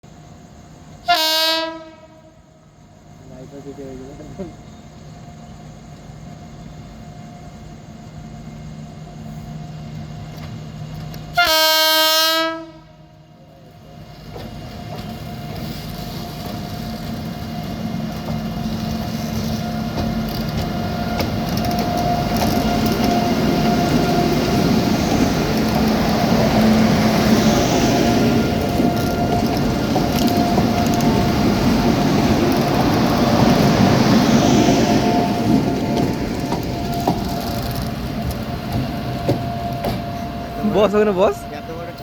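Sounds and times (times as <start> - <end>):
locomotive horn honk: 1.0 - 2.5, 11.3 - 13.0
locomotive running noise: 13.3 - 42.0.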